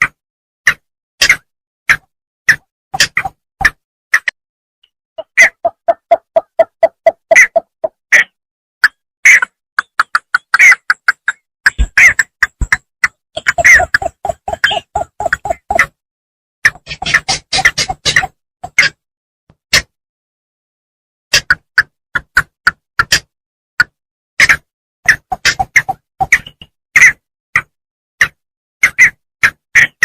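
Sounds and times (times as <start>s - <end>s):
bittern calling: 13.4s - 15.9s.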